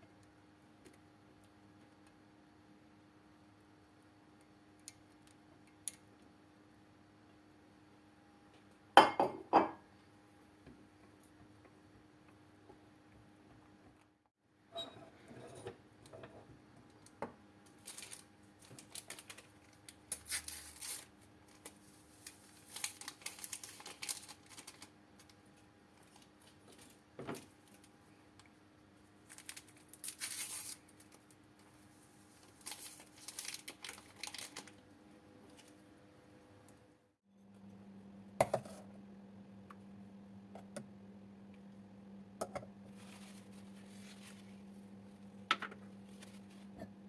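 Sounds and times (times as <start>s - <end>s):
faint steady hum: 0.0s - 47.0s
rustling and crinkling: 17.7s - 25.4s, 29.2s - 34.8s, 42.9s - 47.0s.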